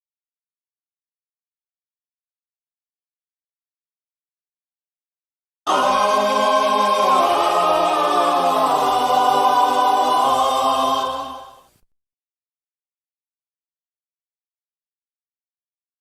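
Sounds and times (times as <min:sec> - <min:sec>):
choir singing a held chord: 0:05.7 - 0:11.8.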